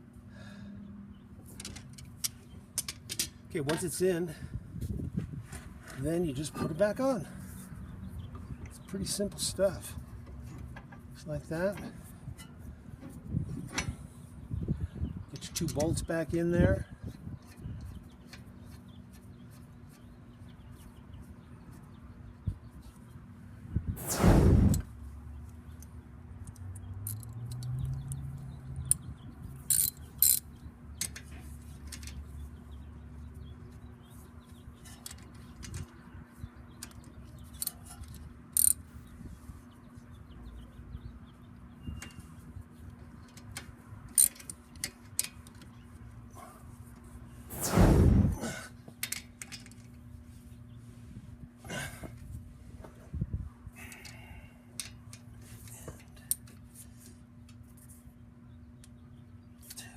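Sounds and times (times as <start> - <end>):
loud bursts of noise: 24.0 - 24.8.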